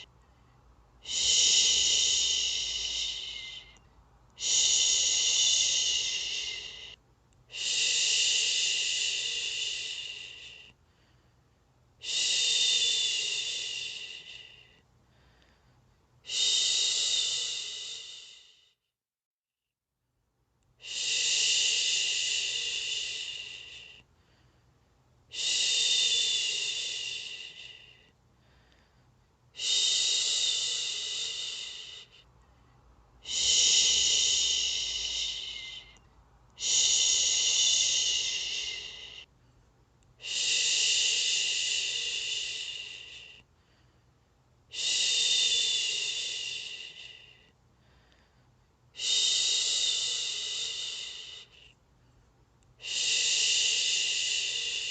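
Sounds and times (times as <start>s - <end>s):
person shushing: 1.0s - 3.8s, 4.4s - 10.7s, 33.2s - 36.0s, 36.6s - 39.2s.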